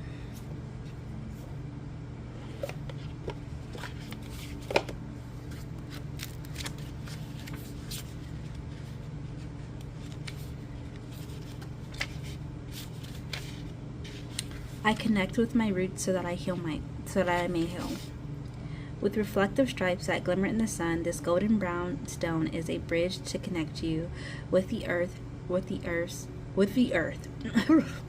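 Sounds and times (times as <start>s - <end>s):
steady low hum: 0.0s - 28.0s
cards clicking and rustling: 2.6s - 8.6s, 9.8s - 14.6s.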